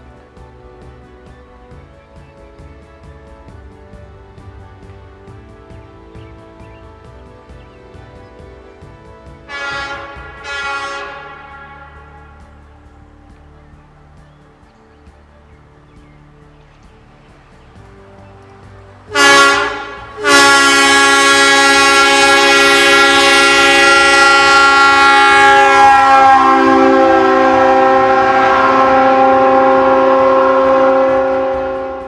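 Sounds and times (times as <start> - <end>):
train air horn: 3.8 - 12.8, 17.9 - 32.0.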